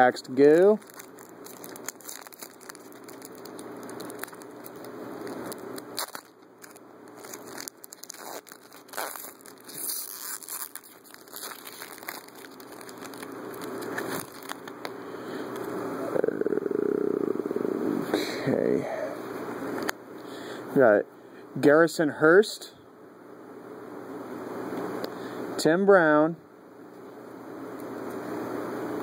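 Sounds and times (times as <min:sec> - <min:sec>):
card wrapper crinkling: 0:00.4 - 0:15.0
wrapper tearing: 0:00.5 - 0:14.8.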